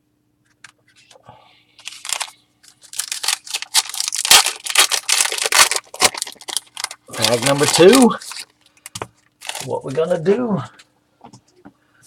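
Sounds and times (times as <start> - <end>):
wrapper ripping and crinkling: 1.8 - 8.6, 9.4 - 9.8.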